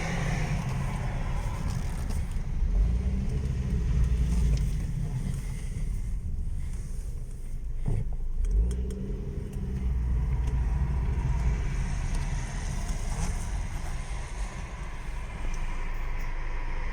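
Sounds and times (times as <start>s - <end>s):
car body creaks: 0.0s - 8.9s
car engine and road rumble: 0.0s - 16.9s.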